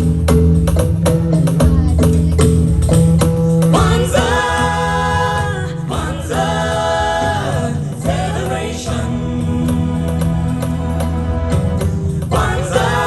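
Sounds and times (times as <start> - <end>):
percussion and bass: 0.0 - 13.0
choir singing held notes: 3.7 - 13.0.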